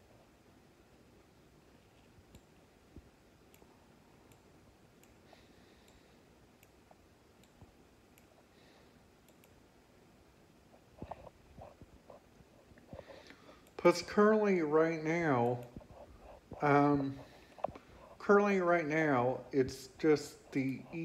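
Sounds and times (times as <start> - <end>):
computer mouse clicks: 2.3 - 5.2, 6.6 - 8.4, 9.2 - 9.6.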